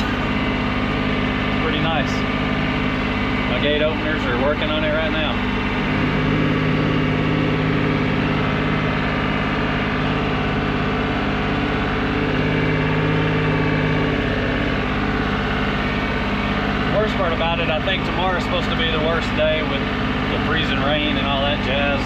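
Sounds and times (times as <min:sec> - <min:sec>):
tractor diesel engine running: 0:00.0 - 0:22.0.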